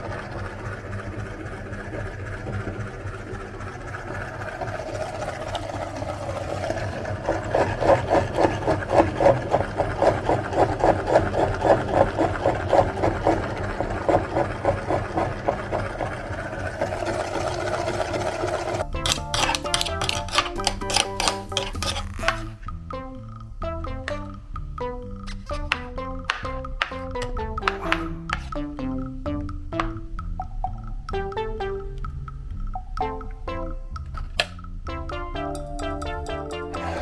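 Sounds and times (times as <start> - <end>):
electric meat grinder motor humming: 0.0 - 22.0, 36.8 - 37.0.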